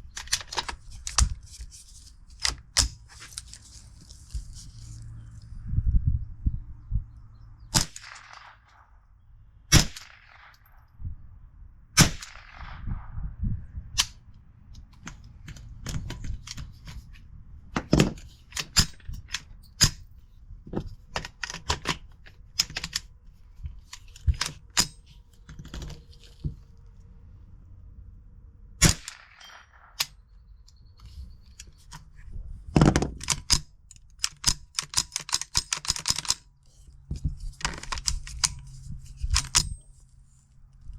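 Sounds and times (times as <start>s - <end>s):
loud gunshots: 12.0s - 13.0s
small clicks: 32.8s - 40.9s.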